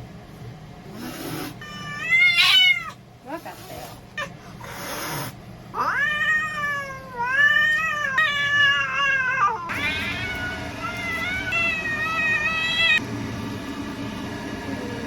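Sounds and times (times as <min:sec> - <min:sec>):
cat meowing: 0:01.6 - 0:03.0, 0:05.8 - 0:13.0.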